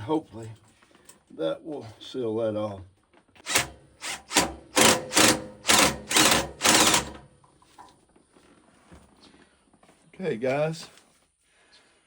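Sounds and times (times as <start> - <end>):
hand tool rasping: 3.4 - 7.2.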